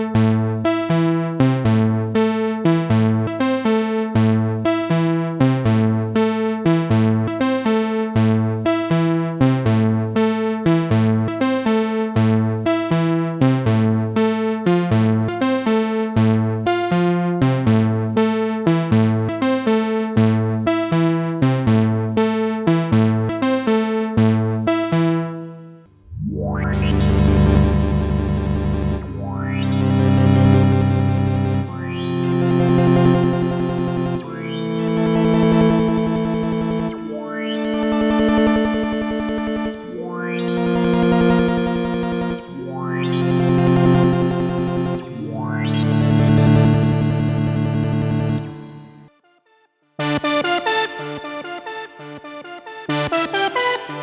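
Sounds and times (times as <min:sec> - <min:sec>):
sustained synth with filter sweep: 0:25.9 - 0:49.1, 0:50.0 - 0:54.0
synth bass line: 0:25.9 - 0:49.1, 0:50.0 - 0:54.0
synthesizer plucked notes: 0:25.9 - 0:49.1, 0:50.0 - 0:54.0.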